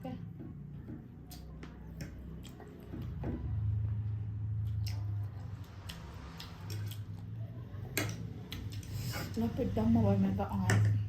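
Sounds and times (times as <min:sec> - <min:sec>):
chewing: 0:04.6 - 0:09.3.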